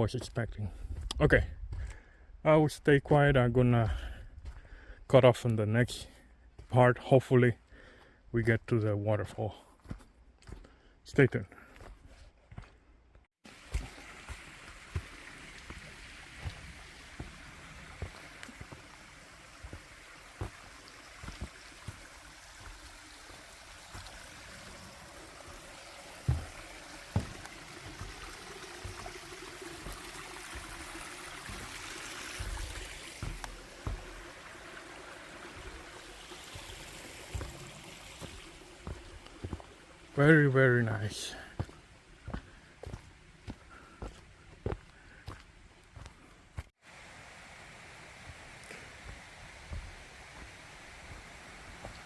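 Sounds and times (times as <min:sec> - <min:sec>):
footsteps thudding on trail: 0:03.9 - 0:04.8, 0:09.8 - 0:10.7, 0:11.6 - 0:12.8, 0:13.7 - 0:18.9, 0:19.6 - 0:34.5, 0:35.6 - 0:40.1, 0:41.3 - 0:46.7, 0:48.6 - 0:52.0
mountain stream rushing: 0:13.5 - 0:45.4, 0:46.8 - 0:52.0.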